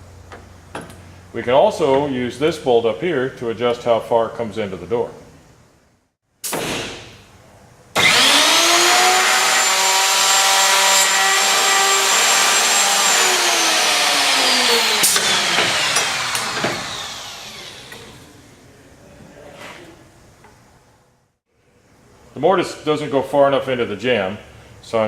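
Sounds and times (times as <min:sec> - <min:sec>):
router motor whining: 0:08.0 - 0:18.3
sharp knocks: 0:15.0 - 0:17.0.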